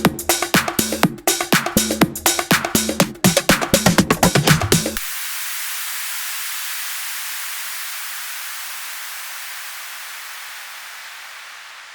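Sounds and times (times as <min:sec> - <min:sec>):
white noise hiss: 0:04.9 - 0:11.9.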